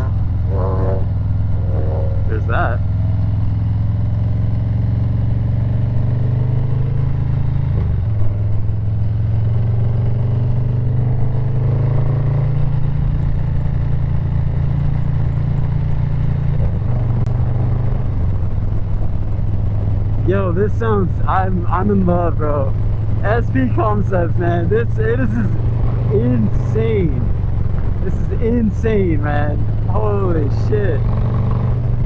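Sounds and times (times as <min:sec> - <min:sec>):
motorcycle exhaust note: 0:00.0 - 0:04.7.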